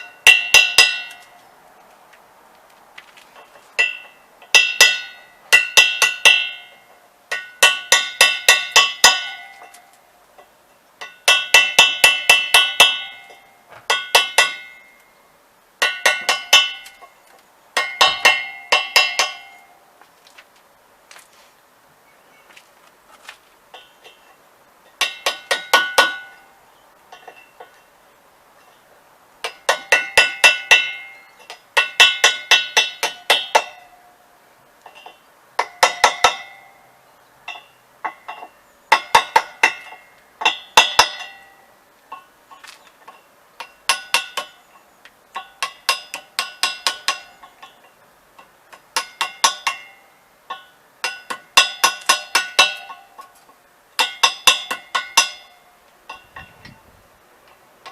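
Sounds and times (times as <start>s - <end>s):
hammer ringing on iron wheel: 0.0s - 1.2s, 3.8s - 9.8s, 11.0s - 15.0s, 15.8s - 17.0s, 17.8s - 19.8s, 25.0s - 26.5s, 29.4s - 34.0s, 35.6s - 36.9s, 49.0s - 53.2s, 54.0s - 56.6s.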